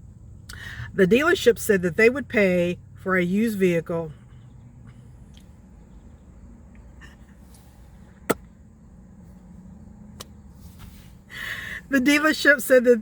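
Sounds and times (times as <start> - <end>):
low steady background noise: 0.0 - 13.0.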